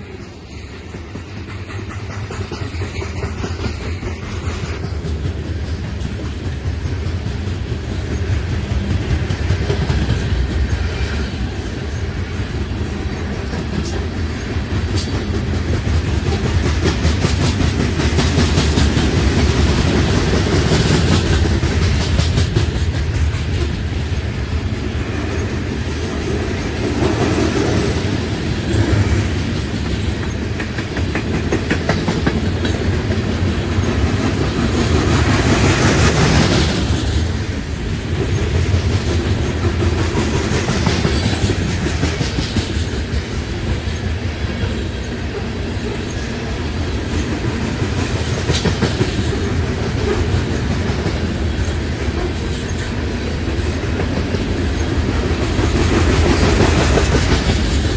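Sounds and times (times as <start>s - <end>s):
freight train rumbling past: 0.0s - 57.9s.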